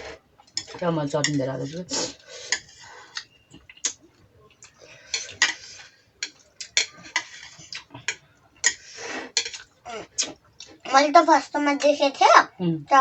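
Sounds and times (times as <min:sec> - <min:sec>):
utensils clicking against dishes: 0:00.0 - 0:04.0, 0:04.6 - 0:10.3.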